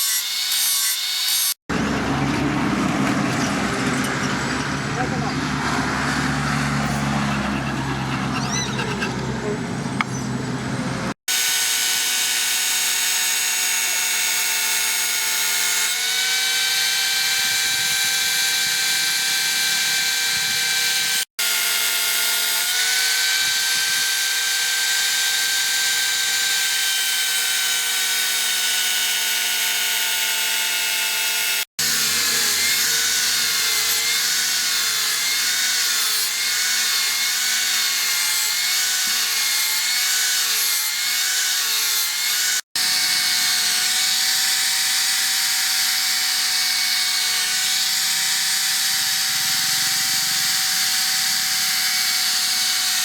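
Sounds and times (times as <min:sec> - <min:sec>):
power tool high whine: 0:11.3 - 0:53.0.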